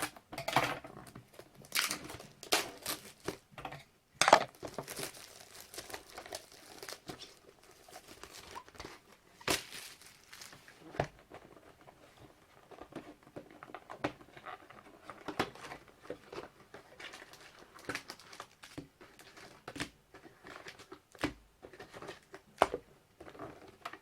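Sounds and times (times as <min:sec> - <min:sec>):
plastic wrap crinkling: 0:01.0 - 0:03.4, 0:04.2 - 0:11.6, 0:15.6 - 0:19.6.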